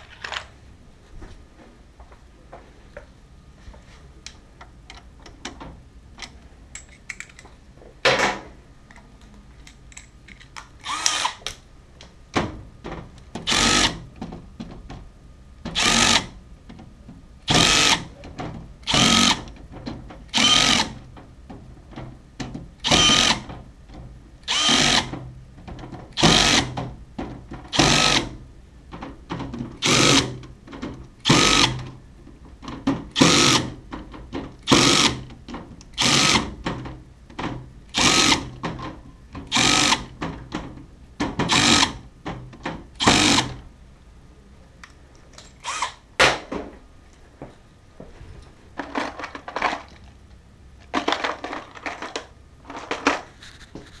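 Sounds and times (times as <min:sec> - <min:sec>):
electric motor tool bursts: 0:10.9 - 0:11.4, 0:13.5 - 0:14.0, 0:17.5 - 0:18.1, 0:18.9 - 0:19.4, 0:20.3 - 0:20.9, 0:22.8 - 0:23.4, 0:24.5 - 0:25.1, 0:31.2 - 0:31.8, 0:36.0 - 0:36.5, 0:38.0 - 0:38.5, 0:39.5 - 0:40.1, 0:41.5 - 0:42.0, 0:43.0 - 0:43.5.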